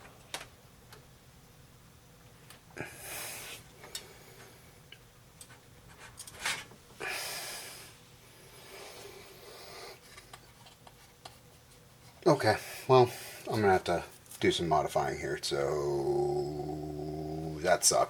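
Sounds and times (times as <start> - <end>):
man sighing and snorting: 2.8 - 3.6.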